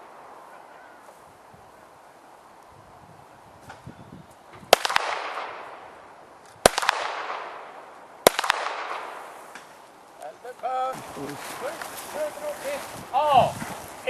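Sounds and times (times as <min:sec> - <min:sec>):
quieter crack: 0:04.5 - 0:10.7
echoing tail: 0:04.6 - 0:11.7
pistol shots: 0:04.7 - 0:06.0, 0:06.6 - 0:09.7.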